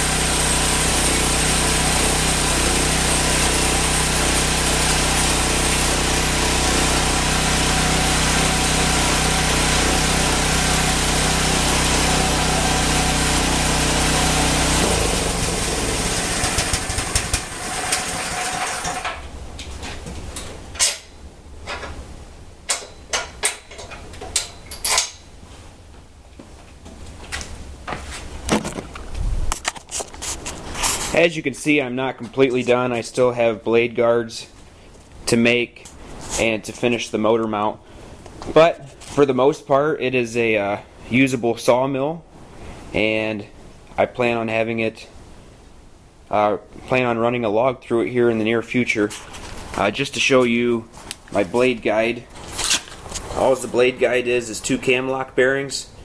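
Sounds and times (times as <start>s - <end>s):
band saw winding down: 0.0s - 19.3s
small engine running: 0.0s - 19.3s
metal and wood clattering: 16.4s - 22.0s.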